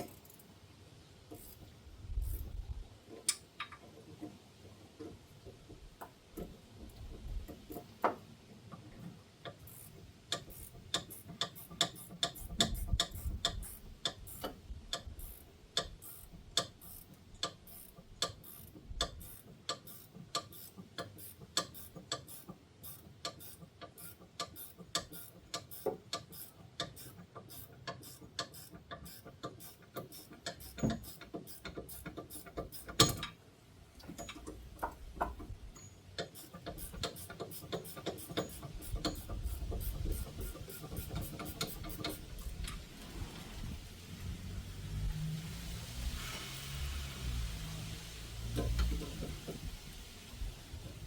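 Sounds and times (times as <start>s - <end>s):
hand ratchet clicking: 9.4s - 33.4s, 34.0s - 42.8s.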